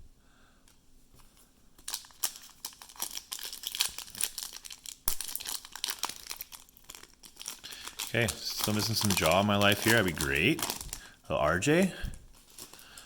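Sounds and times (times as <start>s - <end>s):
foil wrapper crinkling and tearing: 1.8s - 11.2s, 12.3s - 13.0s.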